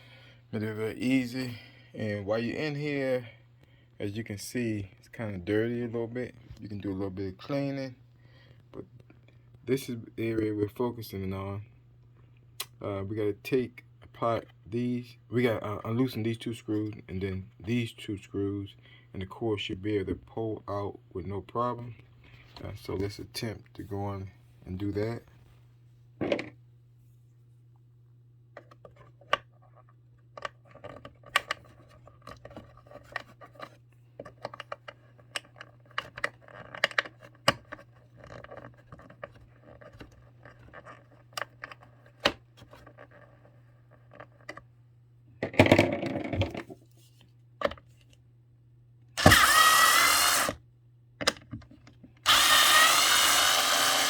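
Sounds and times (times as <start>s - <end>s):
electric screwdriver whirring: 49.2s - 50.6s, 52.2s - 54.0s.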